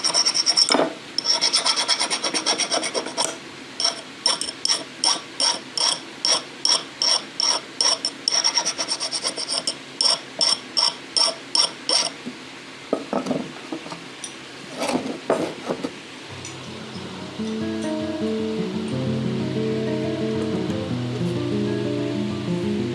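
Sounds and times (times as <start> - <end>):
hand file rasping strokes: 0.0 - 12.2.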